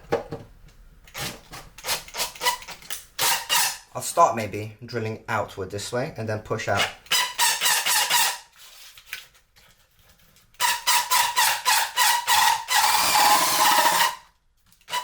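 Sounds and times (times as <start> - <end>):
drill bit squealing in plastic: 1.1 - 3.8, 6.8 - 8.4, 10.6 - 14.3.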